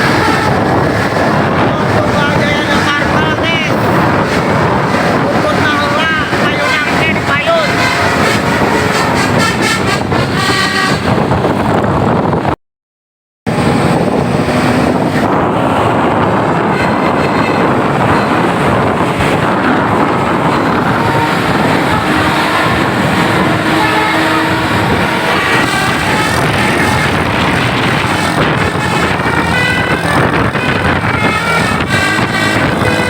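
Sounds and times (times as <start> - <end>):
musical air horn tune: 0.0 - 11.4, 16.4 - 33.0
loud vehicle noise: 0.0 - 12.6, 13.5 - 33.0.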